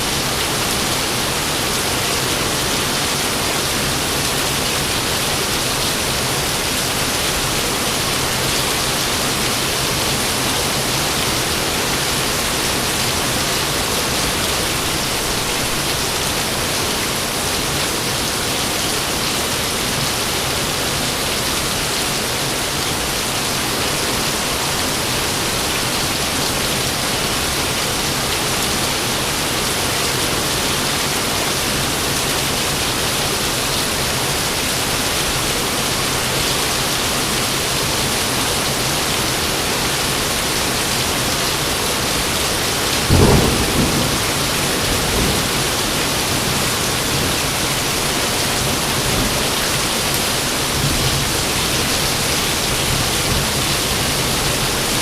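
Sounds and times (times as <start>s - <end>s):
heavy rain hissing: 0.0s - 55.0s
thunder clap and rumble: 43.1s - 47.4s.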